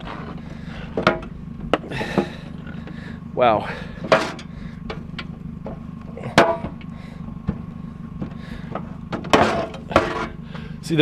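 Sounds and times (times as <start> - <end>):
steady low hum: 0.0 - 11.0
metal clanks on grill: 8.7 - 10.4.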